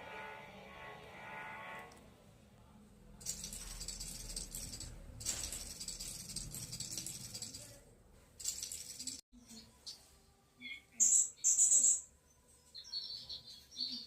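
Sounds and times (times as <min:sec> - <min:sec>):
high-pitched rattling: 0:03.2 - 0:07.8, 0:08.4 - 0:09.2.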